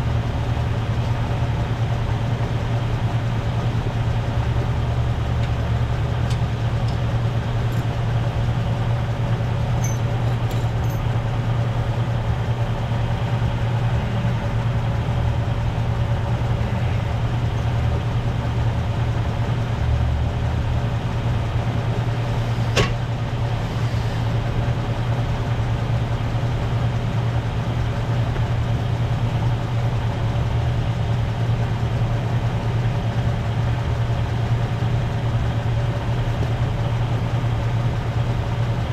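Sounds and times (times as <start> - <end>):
vehicle engine idling: 0.0 - 38.9.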